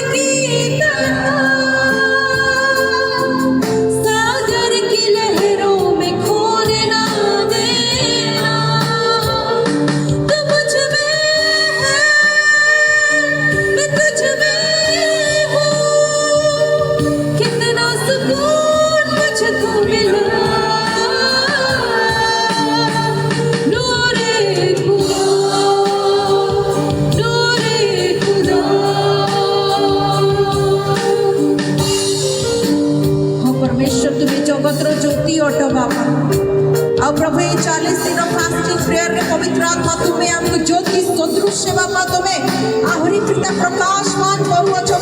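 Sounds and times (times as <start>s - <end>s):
person singing worship song: 14.5s - 32.0s.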